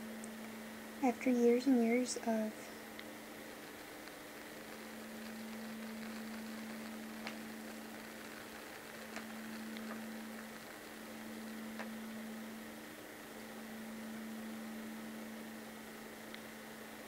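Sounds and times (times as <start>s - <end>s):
faint hiss: 0.0s - 17.0s
low electrical hum: 0.0s - 17.0s
faint clicks: 2.9s - 11.0s.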